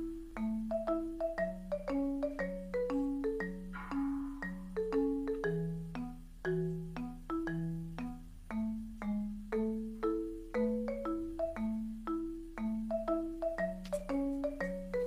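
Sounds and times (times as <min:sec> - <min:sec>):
marimba tune: 0:00.0 - 0:15.0.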